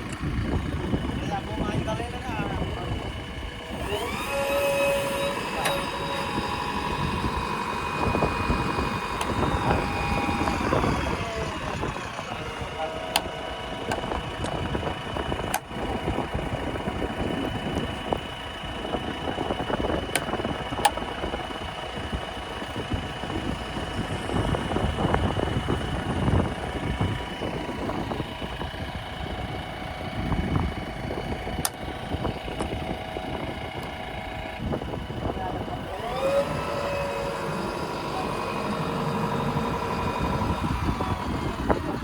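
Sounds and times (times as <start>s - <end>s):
steady high whine: 0.0s - 29.6s, 30.3s - 42.0s
diesel engines running: 0.0s - 42.0s.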